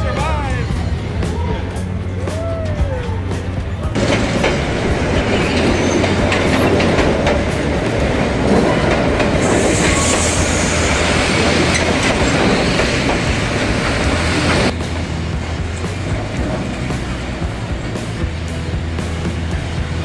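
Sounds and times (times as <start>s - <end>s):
high wheel squeal: 0.0s - 14.9s
train wheels rumbling on rails: 0.0s - 20.0s.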